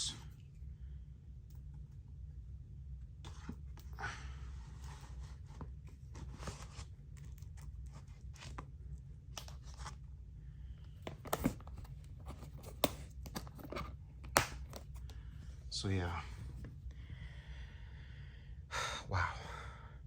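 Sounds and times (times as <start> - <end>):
steady low hum: 0.0 - 20.0
handling rustles and scrapes: 3.2 - 10.2, 10.8 - 16.9.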